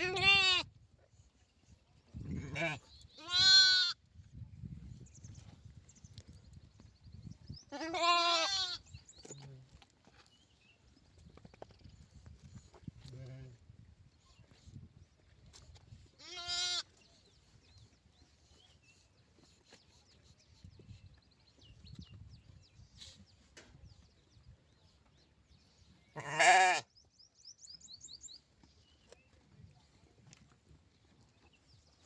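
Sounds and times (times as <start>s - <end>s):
lamb bleating: 0.0s - 0.7s, 2.4s - 4.0s, 7.7s - 8.8s, 16.2s - 16.9s, 26.2s - 26.9s.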